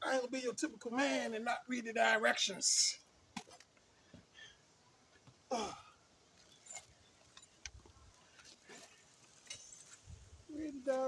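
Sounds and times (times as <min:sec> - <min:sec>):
man sighing: 0:05.5 - 0:06.0
faint clicks and rustles: 0:06.3 - 0:11.0.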